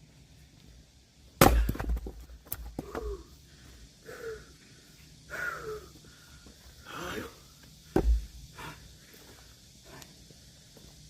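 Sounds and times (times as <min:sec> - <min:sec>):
axe splitting a log: 0:01.4 - 0:03.1
person breathing: 0:02.9 - 0:07.6, 0:08.4 - 0:10.9.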